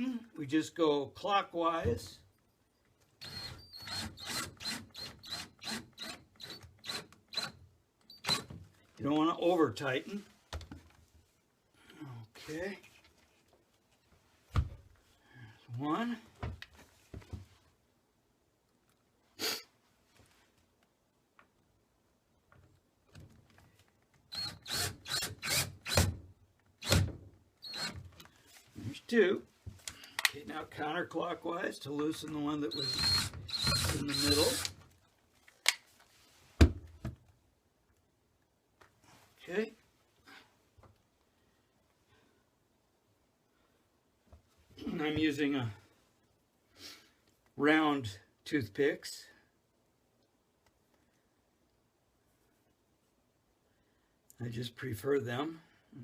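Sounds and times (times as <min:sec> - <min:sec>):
screw squeaking into wood: 0:03.2 - 0:08.6, 0:24.3 - 0:26.1, 0:27.6 - 0:28.2, 0:32.7 - 0:34.8.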